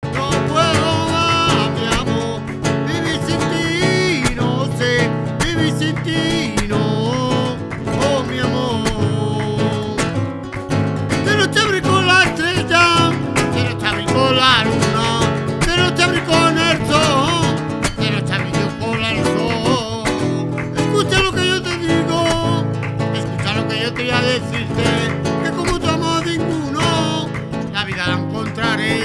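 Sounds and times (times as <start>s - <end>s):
acoustic guitar strummed: 0.0s - 29.0s.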